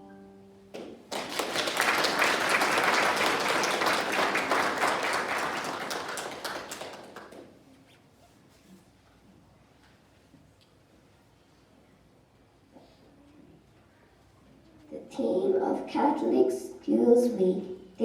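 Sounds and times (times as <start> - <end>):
piano notes: 0.0 - 1.1
audience applauding: 1.1 - 7.6.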